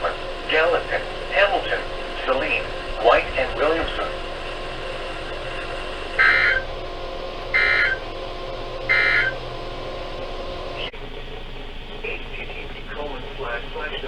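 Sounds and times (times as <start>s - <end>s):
shrill digital data bursts: 0.0s - 6.8s, 7.6s - 8.1s, 8.8s - 9.6s
faint steady hum: 0.0s - 14.0s.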